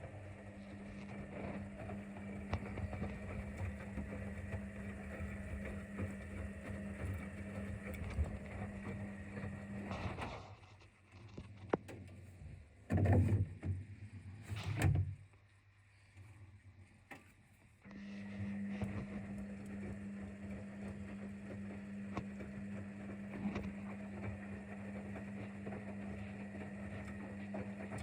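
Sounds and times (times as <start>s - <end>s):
washing machine motor hum: 0.0s - 10.4s, 17.9s - 28.0s.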